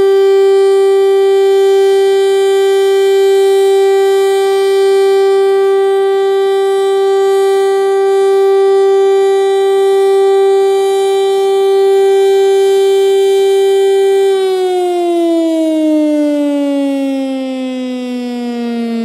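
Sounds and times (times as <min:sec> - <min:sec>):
warning siren steady tone: 0:00.0 - 0:19.0.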